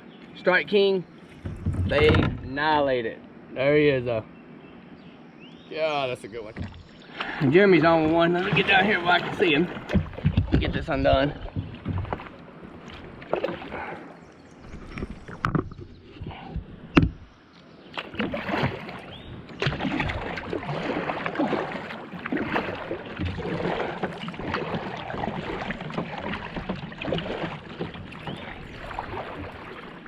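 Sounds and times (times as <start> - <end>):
knocks against boat: 1.4 - 2.6, 6.5 - 6.9, 7.9 - 12.4, 14.9 - 17.3
fish splashing water: 6.5 - 10.6, 11.3 - 14.1, 17.9 - 30.0.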